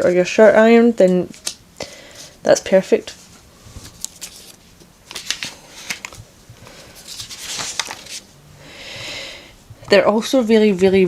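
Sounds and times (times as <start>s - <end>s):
rustling of handled objects: 1.1s - 8.4s.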